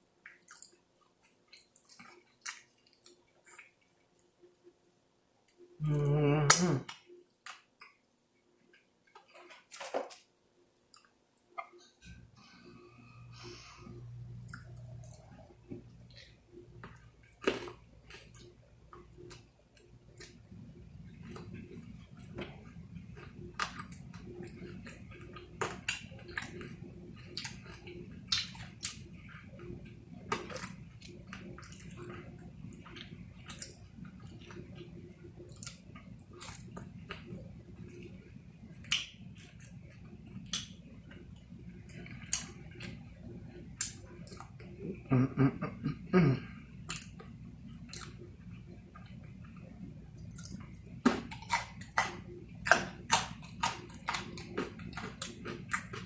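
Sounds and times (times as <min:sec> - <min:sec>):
person chewing food: 0:00.1 - 0:56.0.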